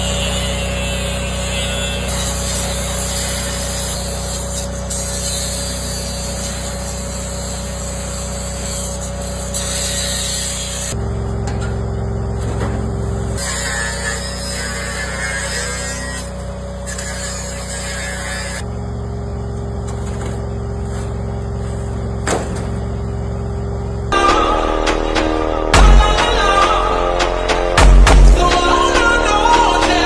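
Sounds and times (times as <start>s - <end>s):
engine running: 0.0s - 30.0s
music: 24.2s - 30.0s.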